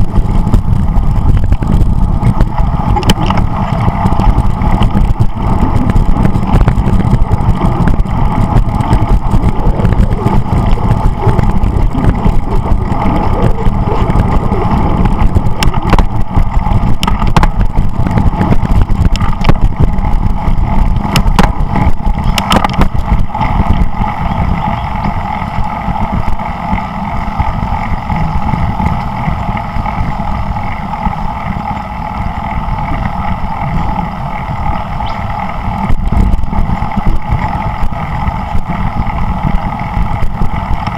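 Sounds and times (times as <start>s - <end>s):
road noise: 0.0s - 40.9s
wind buffeting: 0.0s - 40.9s
sharp clicks and knocks: 1.4s - 3.5s, 15.0s - 19.9s, 20.9s - 23.9s.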